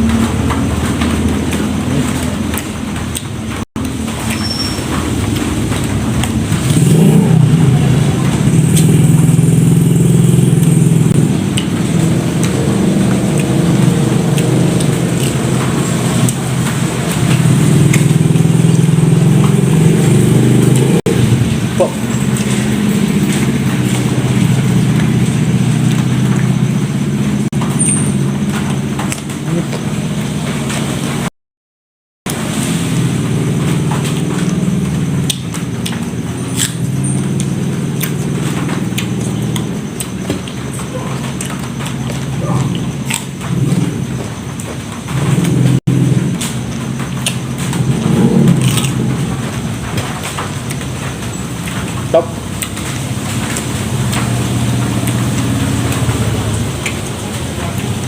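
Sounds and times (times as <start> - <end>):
low motor hum: 0.0 - 31.3, 32.3 - 58.0
low motor drone: 5.2 - 31.3
chewing raw vegetables: 5.3 - 26.7, 33.8 - 58.0.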